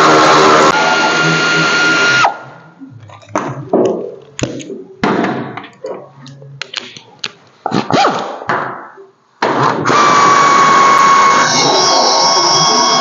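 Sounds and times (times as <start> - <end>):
power drill whining: 0.0 - 2.3, 9.9 - 13.0.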